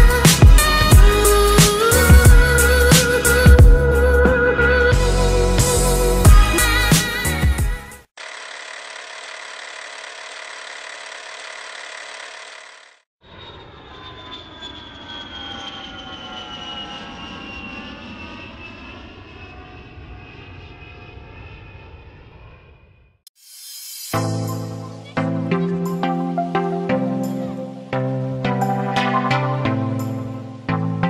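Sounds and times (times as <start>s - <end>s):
engine rush with falling whine: 8.7s - 23.2s
airliner engine drone: 13.2s - 23.0s.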